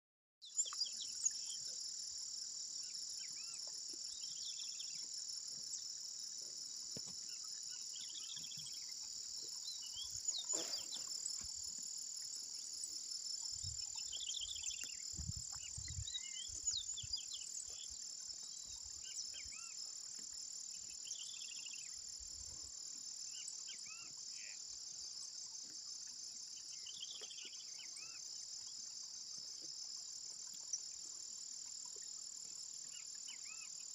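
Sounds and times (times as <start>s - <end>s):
insects chorus: 0.4s - 33.9s
birds chirping: 9.6s - 11.6s.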